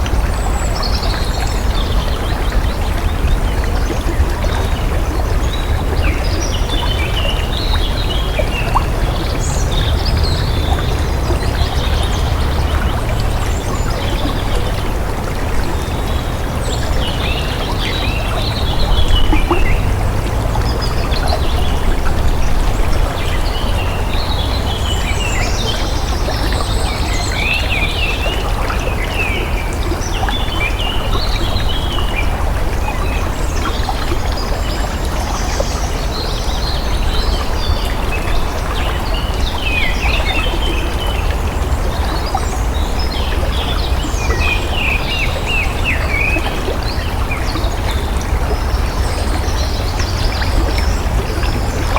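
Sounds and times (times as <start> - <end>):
flowing water: 0.0 - 51.9.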